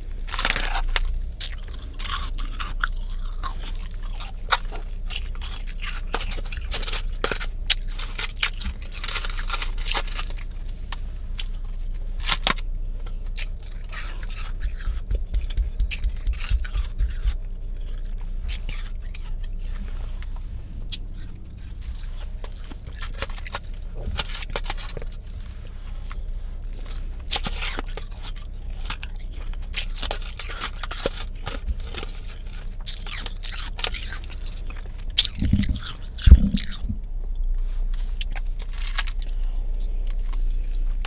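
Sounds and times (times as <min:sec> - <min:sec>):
frost crunching and chewing: 0:00.0 - 0:41.0
steady low hum: 0:00.0 - 0:41.0
scraping: 0:13.6 - 0:17.5, 0:35.2 - 0:37.4.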